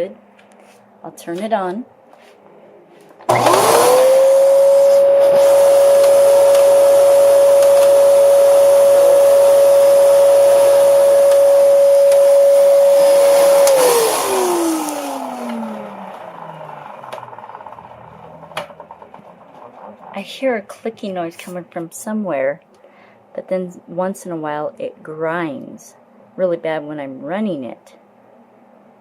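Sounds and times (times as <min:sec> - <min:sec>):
vacuum cleaner motor whine: 0:03.3 - 0:20.2.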